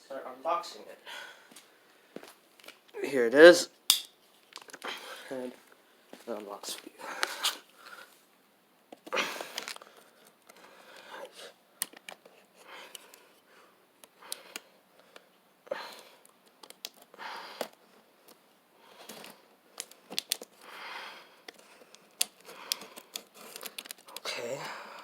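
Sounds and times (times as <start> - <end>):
packaging rustling and scraping: 21.5 - 24.2.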